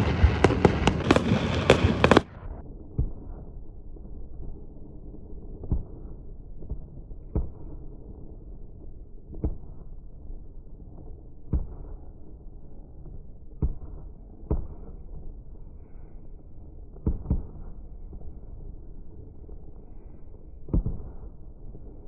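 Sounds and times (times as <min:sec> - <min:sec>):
distant fireworks bangs: 0:00.0 - 0:02.5
steady low rumble: 0:00.0 - 0:11.4.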